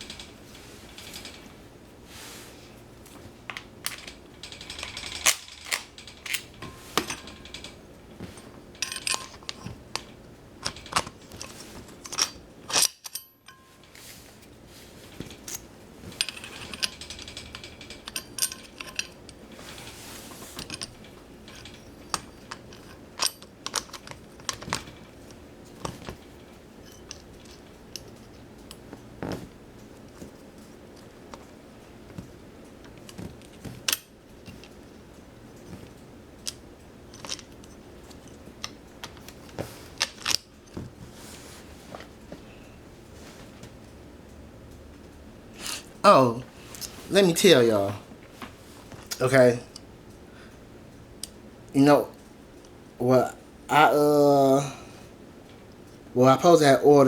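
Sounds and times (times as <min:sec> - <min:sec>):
metal tools clinking: 0:03.5 - 0:14.2.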